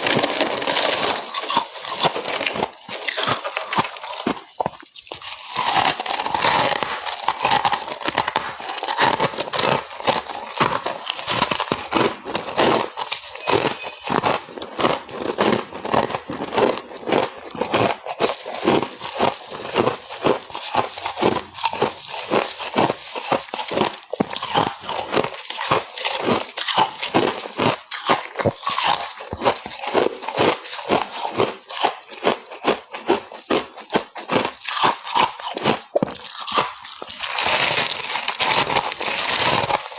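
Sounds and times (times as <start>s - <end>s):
frost ice crunching: 0.0s - 32.0s, 34.6s - 39.9s.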